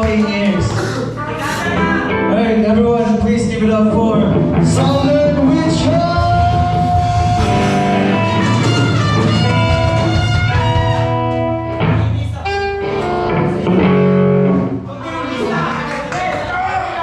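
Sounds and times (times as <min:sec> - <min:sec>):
ska band playing: 0:00.0 - 0:16.4.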